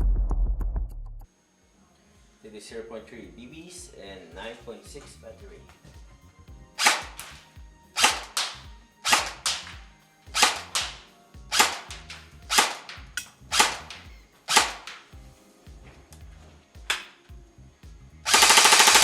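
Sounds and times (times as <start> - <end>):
airsoft rifle shots: 6.8 - 7.4, 8.0 - 15.1, 18.3 - 19.0
fainter crack: 6.8 - 15.2.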